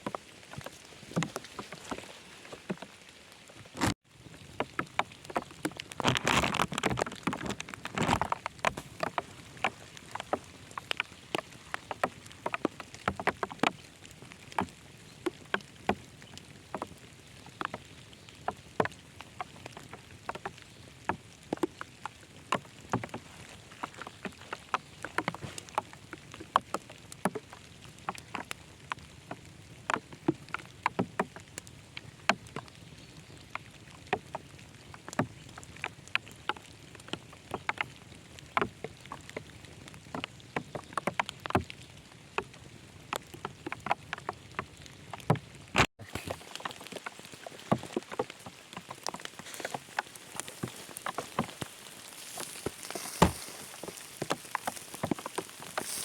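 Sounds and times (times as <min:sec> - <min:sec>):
raindrops ticking on a surface: 0:00.0 - 0:56.0
rain hiss: 0:46.0 - 0:56.0.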